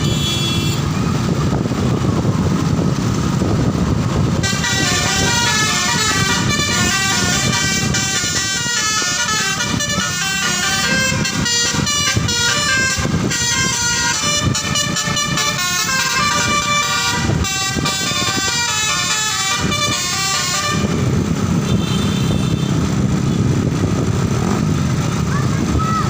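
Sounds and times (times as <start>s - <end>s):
musical air horn tune: 4.4s - 21.0s.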